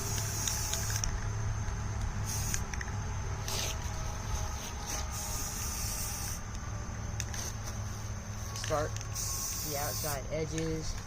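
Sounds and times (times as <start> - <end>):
aerosol spray can hissing: 0.0 - 1.0, 2.2 - 2.6, 4.6 - 6.4, 8.6 - 10.3
steady low hum: 0.0 - 11.0.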